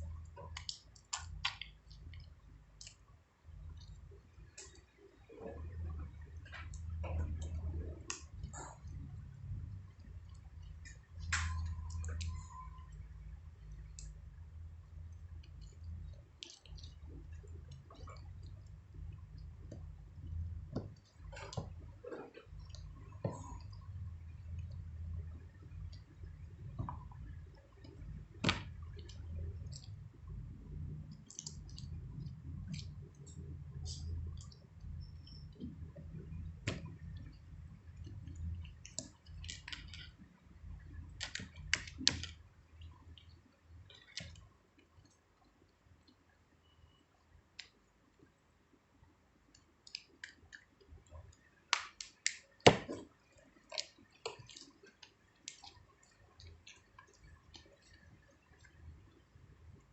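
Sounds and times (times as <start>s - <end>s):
light clicks and taps: 0.0s - 14.2s, 15.1s - 45.2s.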